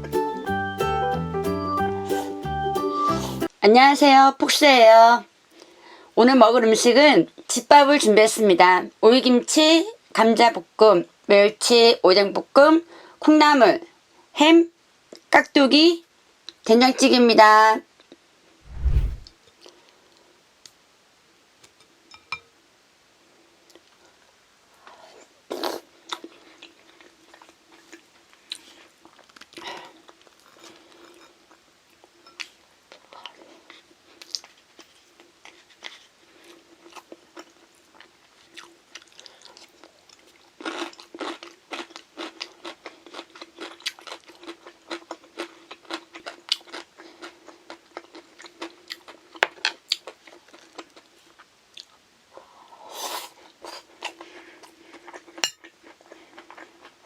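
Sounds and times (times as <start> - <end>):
crunchy chewing: 32.9 - 51.9, 53.5 - 57.0.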